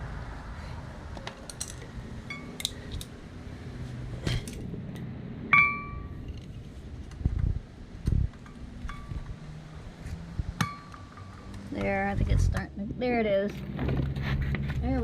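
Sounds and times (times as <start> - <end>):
hammer and screwdriver tapping metal: 5.5 - 6.2
ringing metal strike: 5.5 - 6.2, 10.6 - 11.3.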